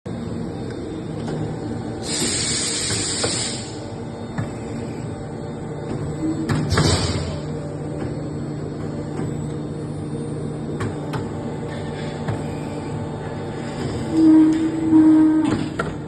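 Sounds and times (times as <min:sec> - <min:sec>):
machine humming: 0:00.1 - 0:16.0
short hiss of air: 0:02.0 - 0:03.8.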